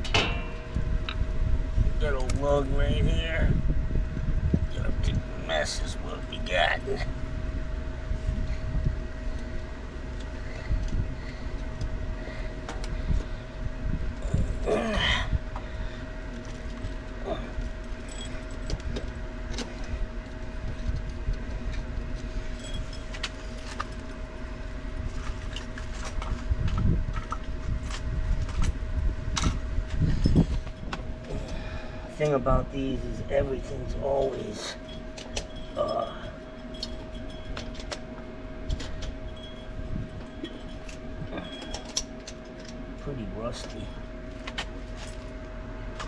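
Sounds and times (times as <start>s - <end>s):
constant hum: 0.0s - 46.0s
steady low rumble: 0.0s - 46.0s
hand tools clinking on metal: 38.7s - 42.6s.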